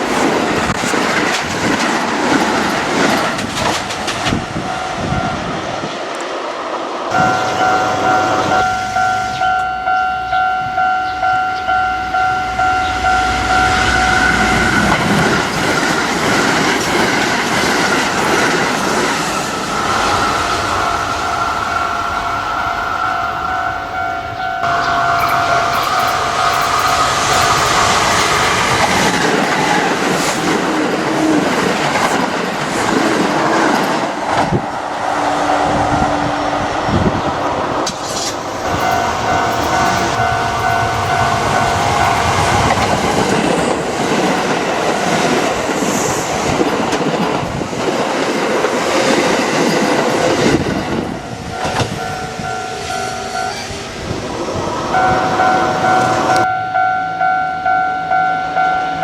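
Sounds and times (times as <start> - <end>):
train wheels clattering over joints: 0.0 - 4.7, 14.3 - 20.7, 24.6 - 34.6, 37.8 - 52.1
crossing warning bell ringing: 2.0 - 5.9, 7.1 - 45.8, 49.3 - 59.0.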